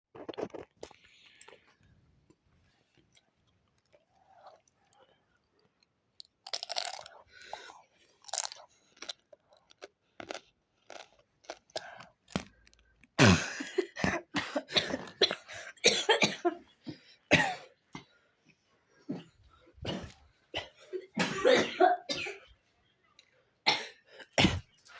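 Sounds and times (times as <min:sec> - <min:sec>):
person chewing crunchily: 0:00.2 - 0:13.2
person coughing: 0:13.2 - 0:16.6, 0:17.3 - 0:17.7, 0:19.1 - 0:22.5.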